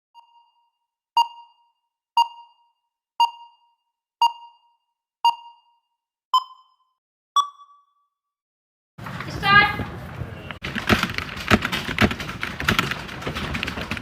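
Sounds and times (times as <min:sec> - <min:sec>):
electronic countdown beeps: 0:00.0 - 0:08.1.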